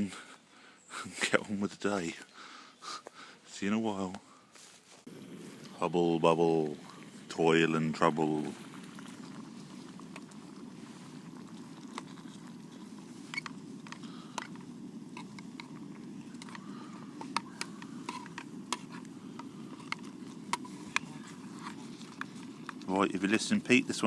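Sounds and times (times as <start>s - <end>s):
camping stove burner rumble: 5.1s - 24.0s
kettle ticks and pops: 5.6s - 24.0s.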